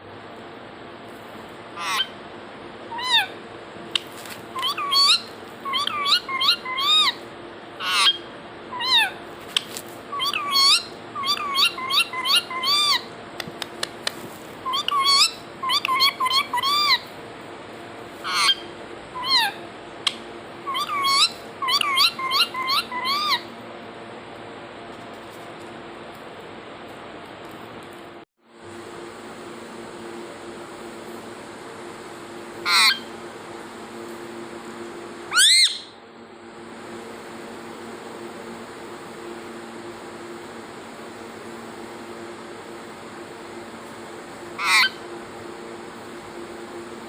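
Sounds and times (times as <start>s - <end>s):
parrot squawking: 1.8s - 2.2s, 2.9s - 3.4s, 4.5s - 7.2s, 7.8s - 9.2s, 10.1s - 13.1s, 14.6s - 17.1s, 18.2s - 23.5s, 32.6s - 33.1s, 35.3s - 36.0s, 44.6s - 45.0s.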